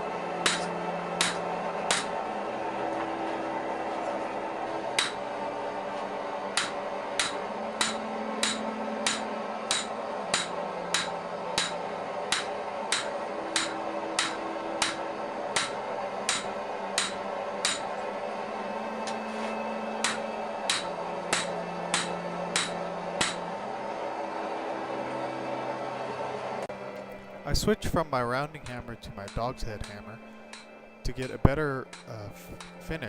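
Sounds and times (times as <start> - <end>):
hammer striking steel on anvil: 0.4 - 2.2, 5.0 - 5.4, 6.5 - 18.0, 19.0 - 23.5, 28.6 - 32.8.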